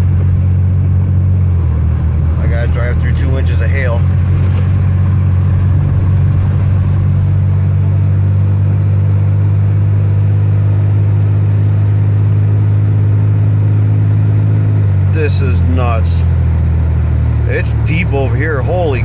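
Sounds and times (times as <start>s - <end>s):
car engine and tyre noise: 0.0s - 19.0s.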